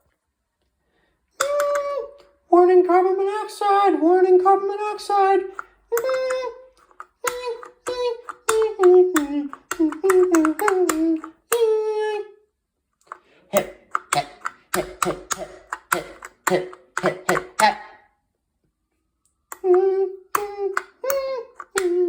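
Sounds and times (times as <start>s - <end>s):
child singing beeps: 7.2s - 11.8s.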